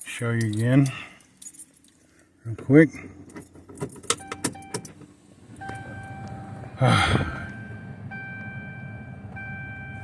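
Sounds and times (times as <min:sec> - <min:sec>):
electronic warning chime: 0:05.6 - 0:06.6, 0:07.3 - 0:10.0.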